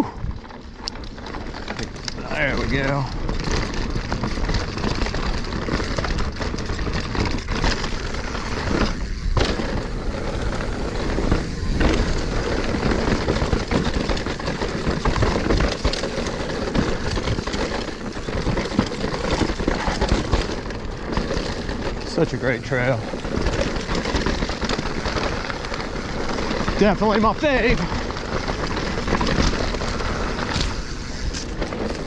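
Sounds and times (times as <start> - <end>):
bike rattling and knocking: 0.0 - 32.0
tyres crunching over dirt: 0.4 - 32.0.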